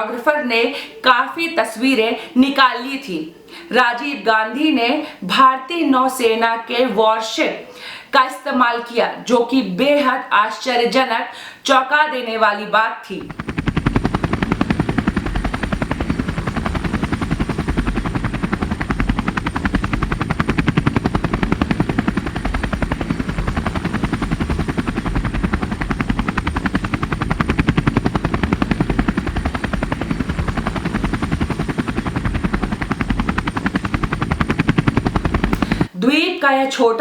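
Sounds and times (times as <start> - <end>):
helicopter rotor chopping: 13.2 - 35.9.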